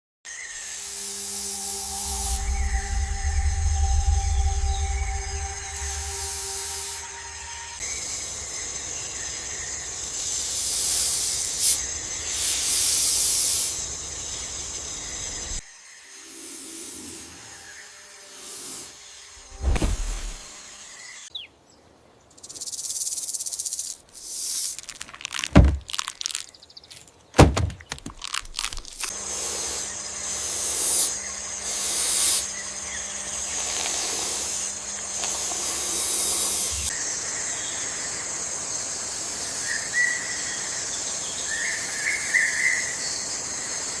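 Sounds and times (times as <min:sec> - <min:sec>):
steady hiss: 0:00.5 - 0:21.1, 0:22.6 - 0:25.6, 0:28.9 - 0:32.6, 0:33.3 - 0:37.2
low hum: 0:00.9 - 0:08.0
hissing swishes: 0:18.4 - 0:20.6
sharp deep thumps: 0:19.4 - 0:20.4, 0:27.4 - 0:28.6.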